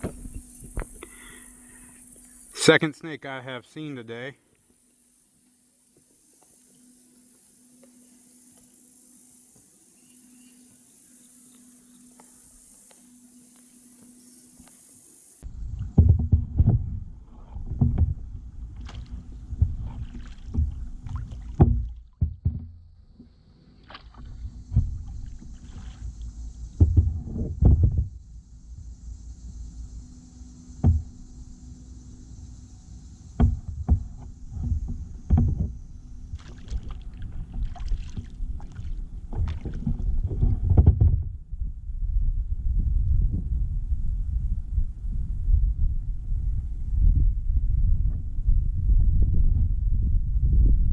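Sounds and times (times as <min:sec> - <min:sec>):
paddle knocking on kayak: 0:00.0 - 0:01.0, 0:15.8 - 0:28.2, 0:30.8 - 0:31.1, 0:33.3 - 0:41.4
low rumble: 0:33.9 - 0:50.9.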